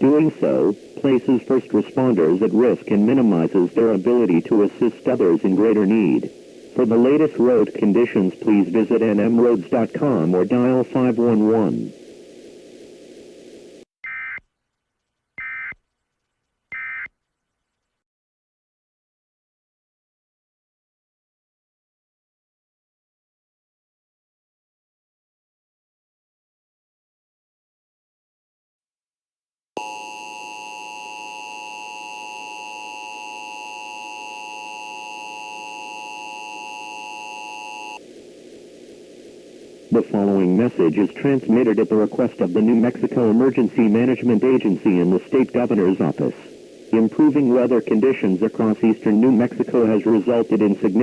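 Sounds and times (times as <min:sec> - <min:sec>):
faint hiss: 0:00.0 - 0:13.9, 0:38.0 - 0:51.0
low steady hum: 0:00.0 - 0:13.9, 0:29.8 - 0:51.0
two-tone alarm: 0:14.0 - 0:14.4, 0:15.4 - 0:15.8, 0:16.7 - 0:17.1, 0:29.8 - 0:38.1
digital data screech bursts: 0:15.4 - 0:15.8.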